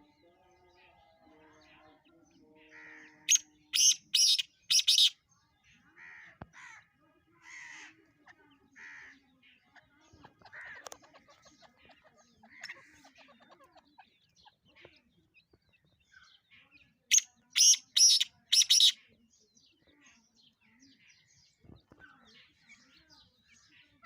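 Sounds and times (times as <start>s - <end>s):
bird harsh rasping calls: 2.7s - 5.2s, 6.0s - 8.0s, 8.7s - 9.3s, 10.4s - 15.0s, 16.1s - 19.1s.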